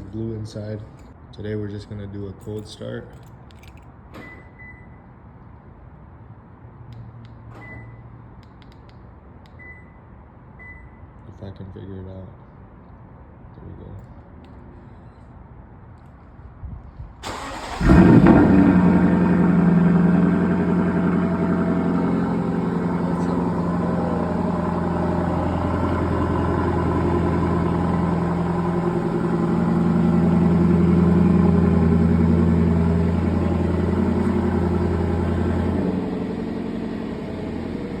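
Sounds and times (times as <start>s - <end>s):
car engine idling: 17.2s - 38.0s.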